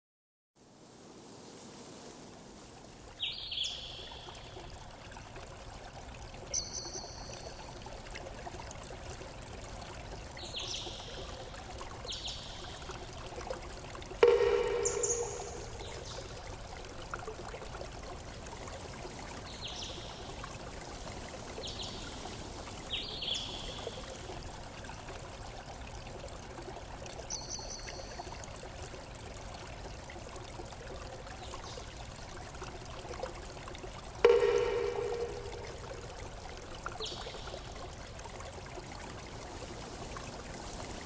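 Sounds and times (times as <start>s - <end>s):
water trickling: 0.8s - 41.0s
loud pitched sound: 14.2s - 15.8s.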